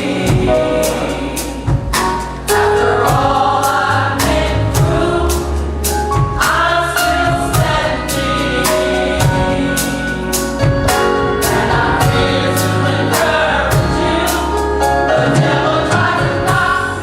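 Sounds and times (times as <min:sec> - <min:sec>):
band playing: 0:00.0 - 0:17.0
bass: 0:00.0 - 0:17.0
gospel choir singing in harmony: 0:00.0 - 0:17.0
steady drumbeat: 0:00.0 - 0:17.0.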